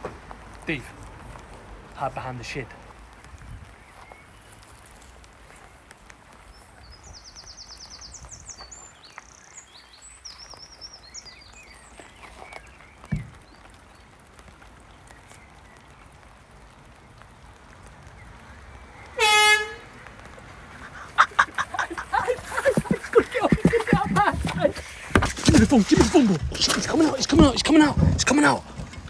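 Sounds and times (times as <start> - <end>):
small birds chirping: 3.6 - 17.3, 20.7 - 29.0.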